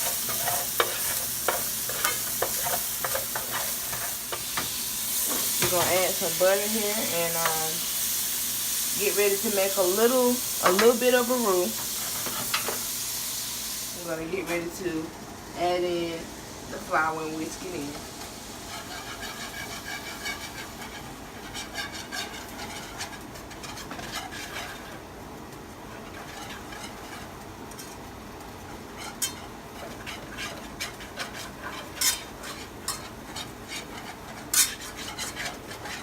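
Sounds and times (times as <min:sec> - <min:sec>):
whisk scraping a pan: 0:00.0 - 0:08.2, 0:09.1 - 0:12.9, 0:18.6 - 0:25.1, 0:25.9 - 0:36.0.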